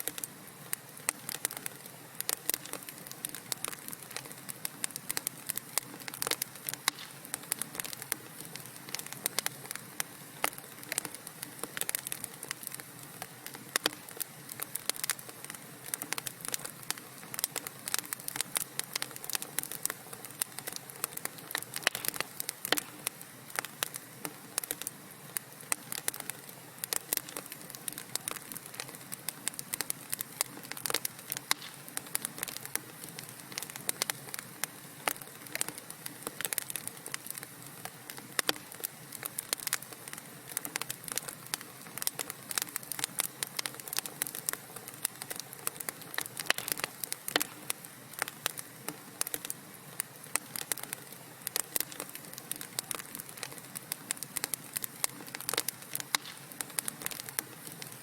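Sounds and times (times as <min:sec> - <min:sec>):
soft fire hiss: 0:00.0 - 0:58.0
wood fire crackling: 0:00.0 - 0:58.0.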